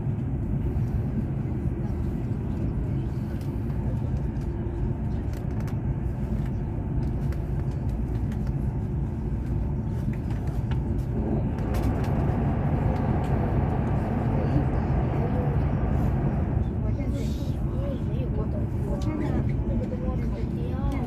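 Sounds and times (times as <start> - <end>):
train rumble inside passenger car: 0.0 - 21.0.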